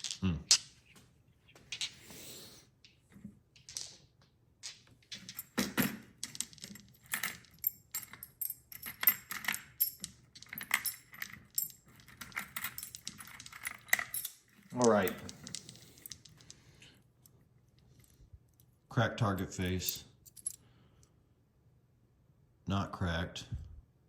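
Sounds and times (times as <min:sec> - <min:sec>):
small metal parts clinking: 0:03.6 - 0:18.7, 0:19.4 - 0:20.6.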